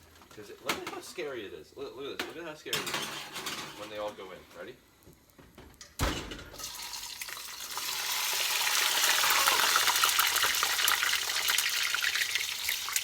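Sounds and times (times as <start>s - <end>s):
potatoes thumping into oil: 6.0s - 13.0s
oil sizzling and crackling: 6.5s - 13.0s.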